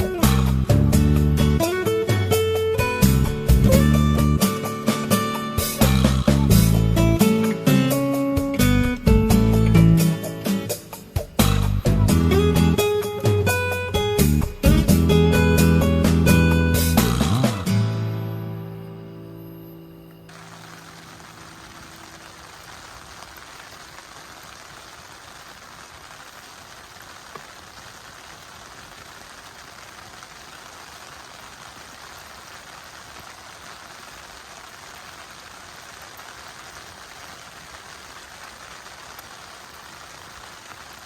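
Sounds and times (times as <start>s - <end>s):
water hiss: 20.3s - 35.7s.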